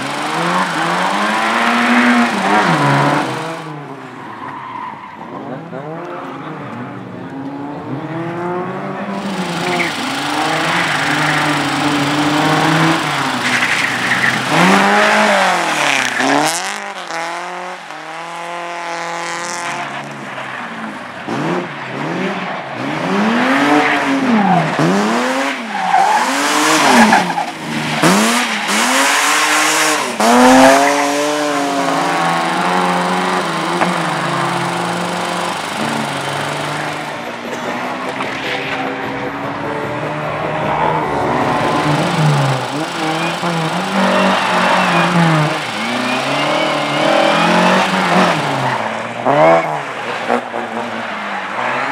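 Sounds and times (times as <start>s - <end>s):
race car engine revving: 0.0s - 51.9s
tyres squealing: 9.2s - 17.1s, 40.9s - 49.8s.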